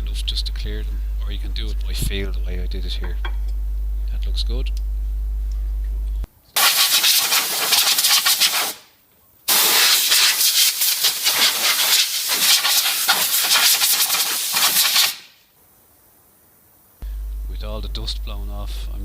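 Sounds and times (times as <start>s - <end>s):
compressed air hissing: 6.6s - 8.9s, 9.5s - 15.4s.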